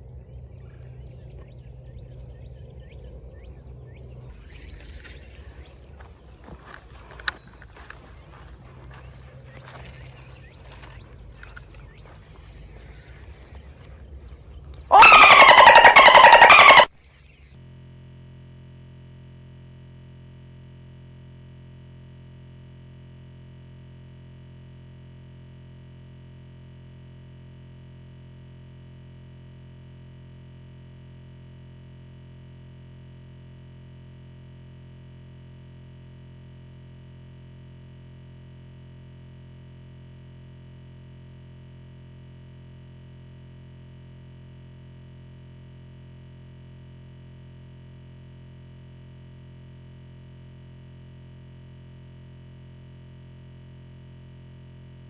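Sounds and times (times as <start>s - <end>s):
steady electronic hum: 0.0s - 16.9s.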